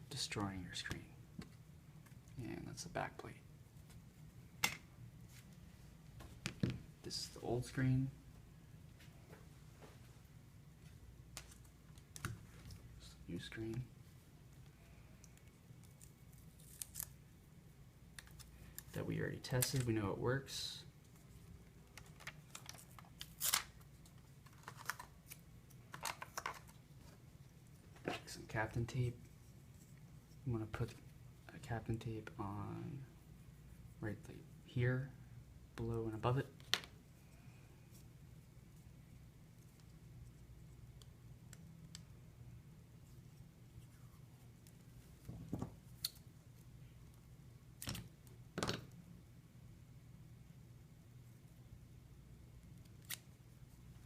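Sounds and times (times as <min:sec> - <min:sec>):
low steady hum: 0:00.0 - 0:54.0
clicks and rustles of tape: 0:18.1 - 0:20.0, 0:21.0 - 0:27.2.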